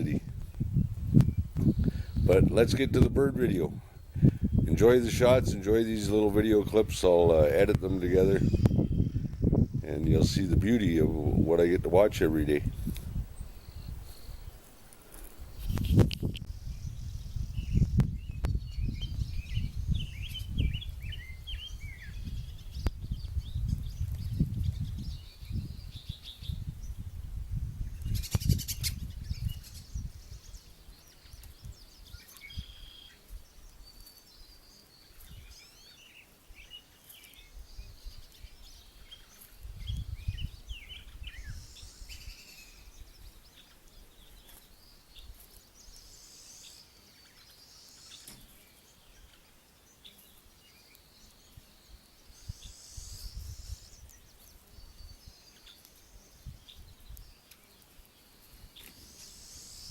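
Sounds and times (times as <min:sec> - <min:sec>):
wind buffeting microphone: 0:00.0 - 0:14.6, 0:15.4 - 0:30.6, 0:37.6 - 0:43.3, 0:52.4 - 0:54.2
songbirds chirping and singing: 0:00.0 - 0:27.1, 0:27.8 - 0:59.9.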